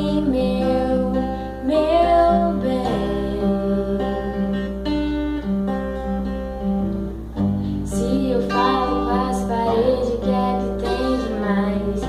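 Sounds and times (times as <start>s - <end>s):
person singing: 0.0s - 5.0s, 7.7s - 12.0s
acoustic guitar: 0.0s - 12.0s.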